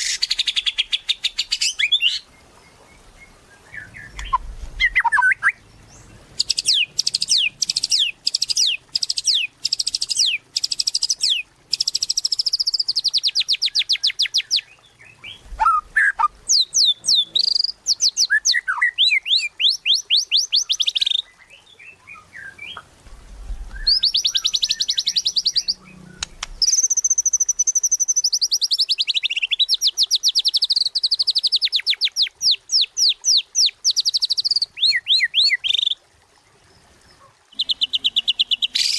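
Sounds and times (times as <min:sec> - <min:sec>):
bird singing fast trills: 0:00.0 - 0:22.8, 0:23.7 - 0:36.0.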